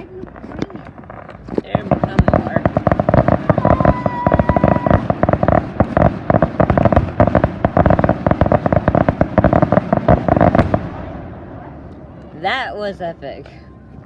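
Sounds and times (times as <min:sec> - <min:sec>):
fireworks crackling barrage: 0:00.0 - 0:13.9
firework whistle: 0:02.3 - 0:08.6.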